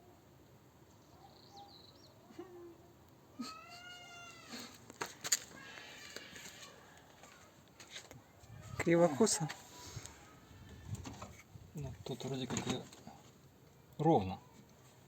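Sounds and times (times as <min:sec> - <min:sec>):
cat meowing: 0:03.4 - 0:04.7, 0:05.5 - 0:06.9.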